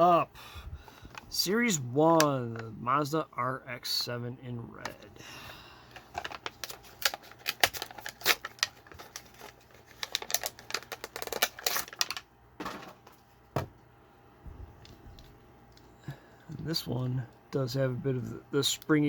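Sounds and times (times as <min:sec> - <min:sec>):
box packaging clicks and crackles: 0:05.9 - 0:12.3.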